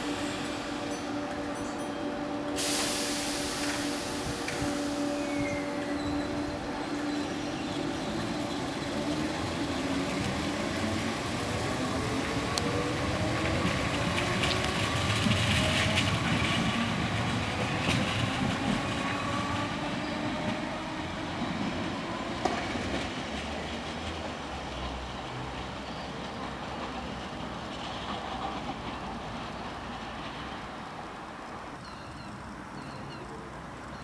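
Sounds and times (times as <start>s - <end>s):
train traction motor whine: 0.0s - 22.2s
wheel-on-rail noise: 0.0s - 34.0s.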